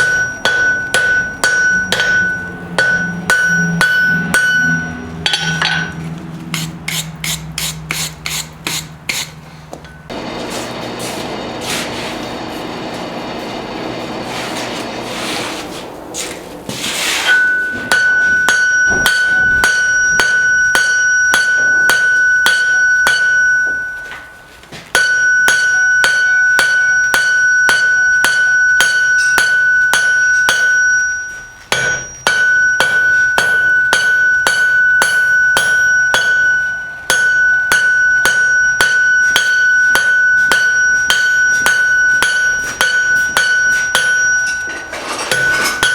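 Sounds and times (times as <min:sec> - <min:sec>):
hammer striking steel on anvil: 0:00.0 - 0:10.4, 0:17.1 - 0:45.9
rough scraping: 0:10.2 - 0:12.7, 0:14.2 - 0:17.8.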